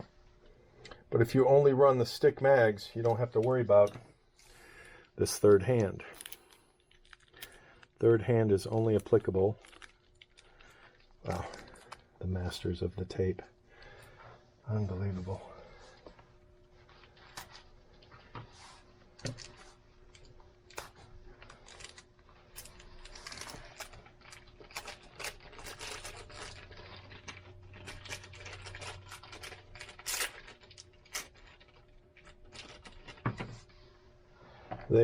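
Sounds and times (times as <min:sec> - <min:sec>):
package crinkling: 0:06.2 - 0:08.0, 0:08.7 - 0:12.1, 0:19.2 - 0:33.3
packing tape peeling and tearing: 0:20.7 - 0:33.1.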